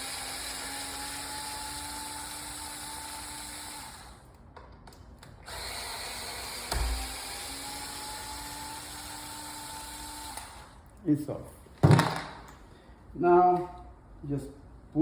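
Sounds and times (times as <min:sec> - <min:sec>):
cordless drill whining: 0:00.0 - 0:04.3, 0:05.4 - 0:10.8.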